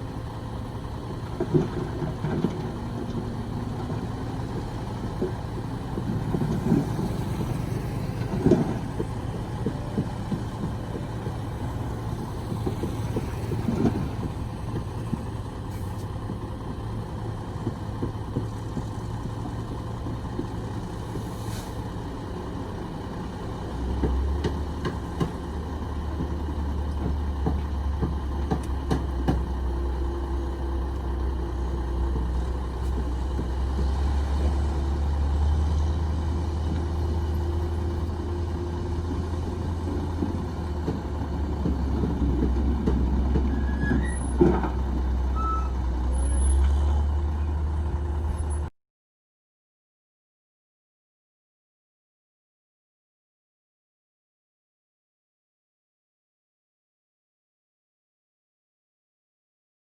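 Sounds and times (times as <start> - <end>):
heavy diesel engines running: 0.0 - 48.7
knocks and clunks: 23.9 - 30.0.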